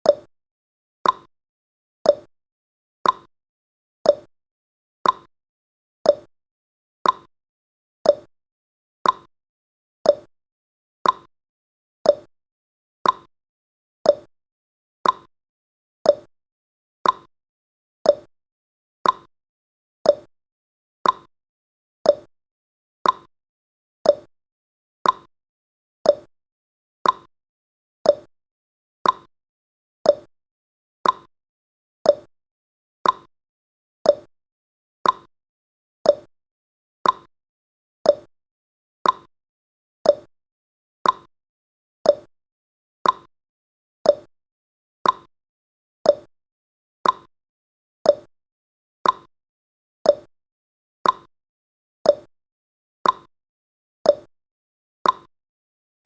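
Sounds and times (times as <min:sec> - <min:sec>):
countdown timer ticking: 0:28.1 - 0:28.3, 0:32.1 - 0:32.3, 0:34.1 - 0:34.3, 0:36.1 - 0:36.3, 0:38.1 - 0:38.3, 0:40.1 - 0:40.3, 0:42.1 - 0:42.3, 0:46.1 - 0:46.3, 0:50.1 - 0:50.3.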